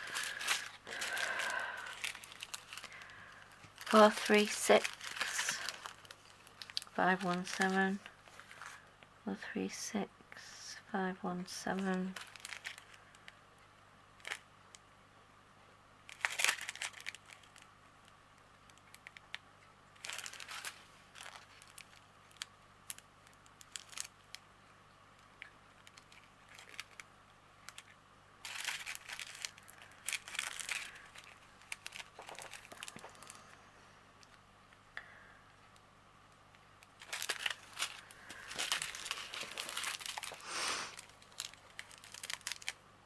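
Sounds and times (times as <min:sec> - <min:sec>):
plastic packets crinkling: 0:00.0 - 0:08.9, 0:11.6 - 0:13.4, 0:14.2 - 0:14.5, 0:16.1 - 0:19.3, 0:20.0 - 0:24.4, 0:25.2 - 0:34.4, 0:36.8 - 0:42.8.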